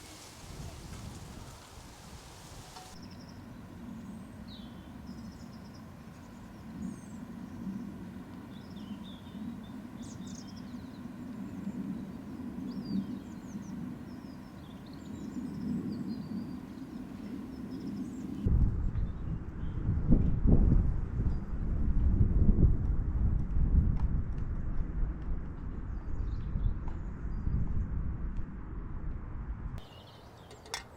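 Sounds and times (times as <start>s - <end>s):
songbirds chirping: 0.0s - 18.5s, 29.8s - 30.9s.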